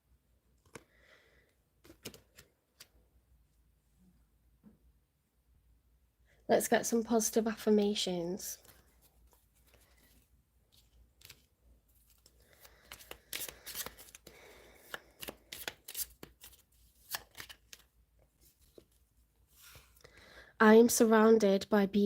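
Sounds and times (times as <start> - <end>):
cards being shuffled: 1.8 - 2.9, 8.6 - 19.0.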